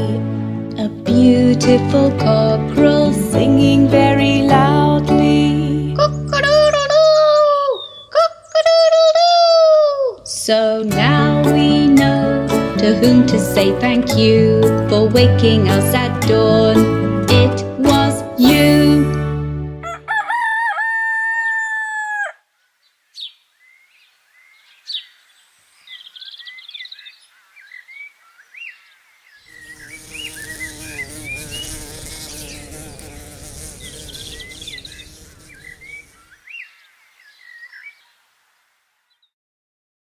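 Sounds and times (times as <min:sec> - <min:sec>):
small birds chirping: 0:07.1 - 0:08.8, 0:22.6 - 0:38.2
farmyard noise: 0:19.8 - 0:22.6, 0:29.6 - 0:36.3.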